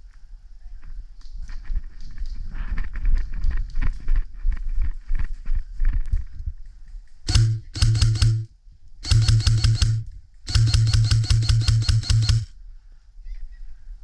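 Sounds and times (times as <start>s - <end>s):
airsoft gun firing full auto: 7.3s - 12.5s.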